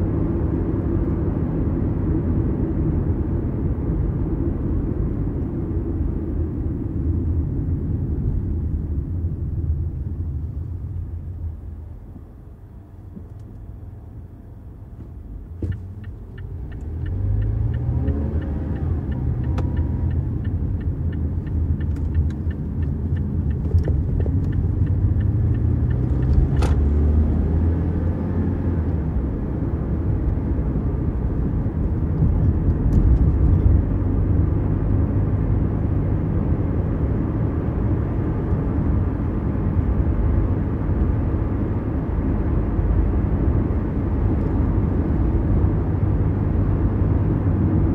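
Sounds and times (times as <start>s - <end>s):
car engine and road rumble: 0.0s - 47.9s
regular ticking: 15.6s - 26.6s.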